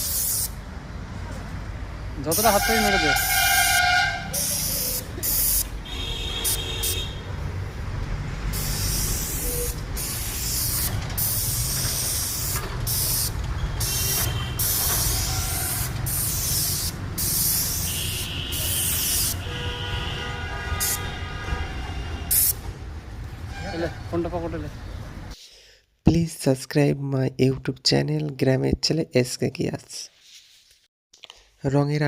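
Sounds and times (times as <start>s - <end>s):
paint spray gun hissing: 0.0s - 0.6s, 4.4s - 5.7s, 8.5s - 19.4s.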